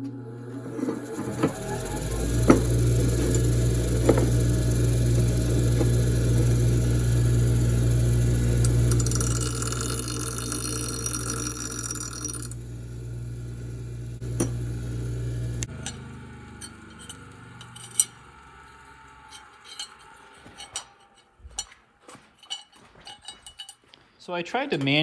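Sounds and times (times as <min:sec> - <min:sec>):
electric motor humming: 0:00.0 - 0:20.6
light metallic clinks and taps: 0:15.7 - 0:18.2, 0:19.3 - 0:24.0.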